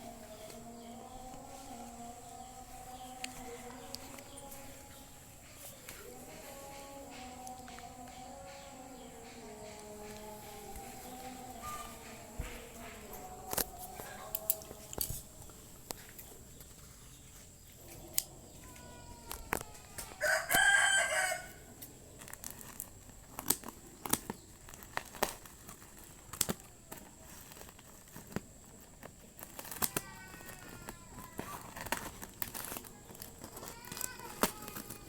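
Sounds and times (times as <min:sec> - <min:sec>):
loud bird call: 0:00.0 - 0:14.6, 0:18.5 - 0:21.6
faint falling bird calls: 0:00.0 - 0:22.8
packaging crinkling and clicking: 0:09.6 - 0:16.0, 0:21.8 - 0:35.0.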